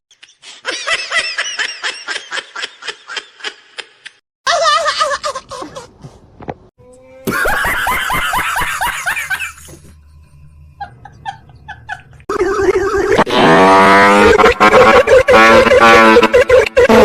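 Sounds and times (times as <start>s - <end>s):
loud burst of laughter: 7.3s - 9.8s, 10.8s - 17.0s.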